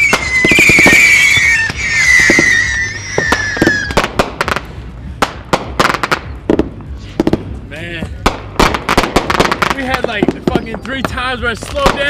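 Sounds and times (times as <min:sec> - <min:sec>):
firework whistle: 0:00.0 - 0:04.2
firework pops and bangs: 0:00.0 - 0:07.5, 0:08.2 - 0:12.0.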